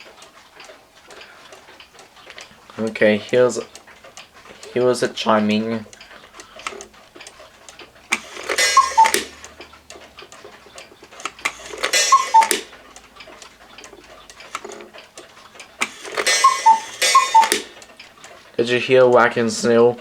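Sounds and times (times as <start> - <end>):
clock ticking: 0.0 - 20.0
cuckoo clock calls: 1.2 - 18.3.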